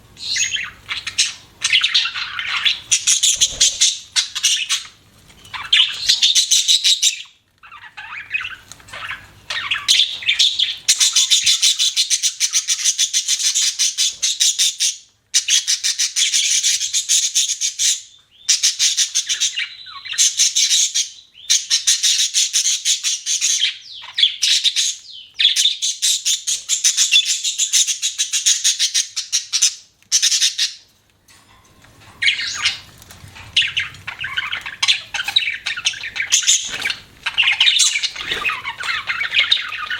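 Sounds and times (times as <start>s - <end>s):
budgerigar chattering: 33.6s - 39.9s.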